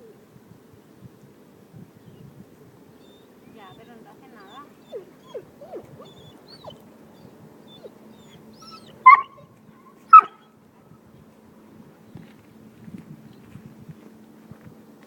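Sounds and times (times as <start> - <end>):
dog whining: 4.4 - 10.4
dog yipping: 4.4 - 10.5.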